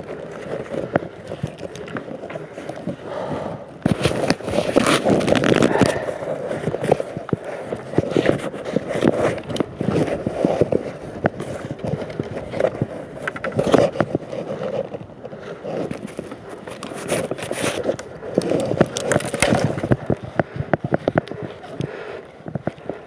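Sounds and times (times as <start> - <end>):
scraping: 3.8 - 20.1.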